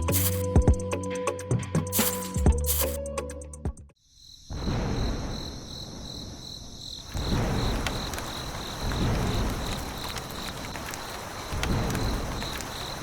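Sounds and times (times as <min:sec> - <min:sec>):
insect-like chirping trill: 0:00.1 - 0:00.5, 0:01.9 - 0:03.1.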